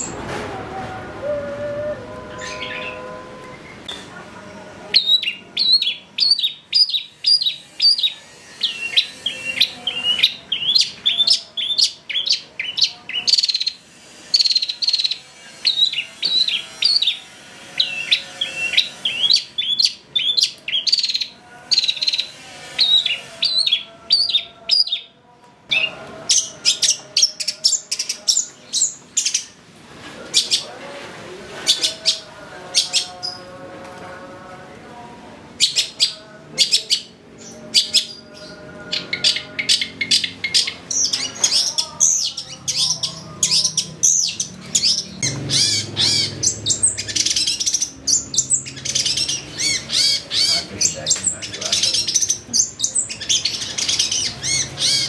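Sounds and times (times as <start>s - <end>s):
harsh scratchy bird notes: 5.0s - 24.9s, 35.6s - 55.0s.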